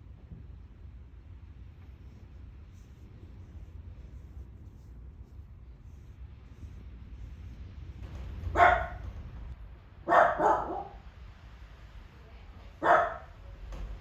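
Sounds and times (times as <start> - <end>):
steady low rumble: 0.0 - 14.0
dog barking: 8.5 - 9.1, 10.0 - 11.0, 12.8 - 13.4.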